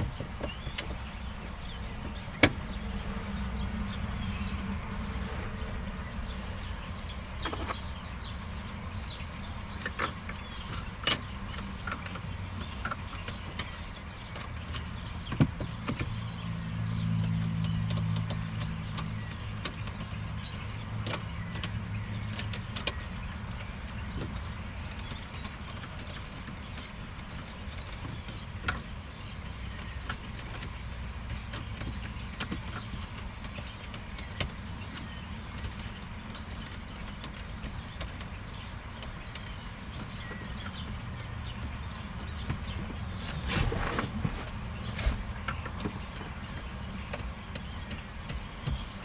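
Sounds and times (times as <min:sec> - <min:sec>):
light clicks and taps of parts: 0:09.4 - 0:43.0, 0:44.6 - 0:49.0.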